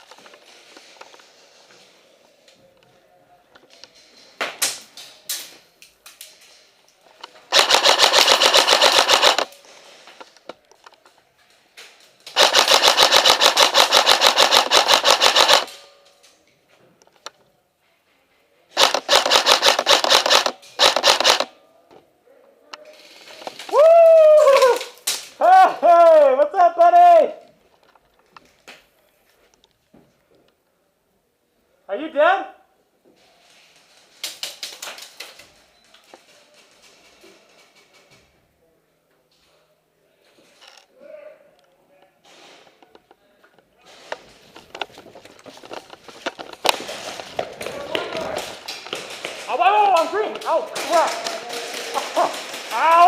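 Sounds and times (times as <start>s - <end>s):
airsoft rifle firing bursts: 7.5s - 9.5s, 12.4s - 15.8s, 18.8s - 21.5s
person shouting wavering calls: 52.7s - 53.0s.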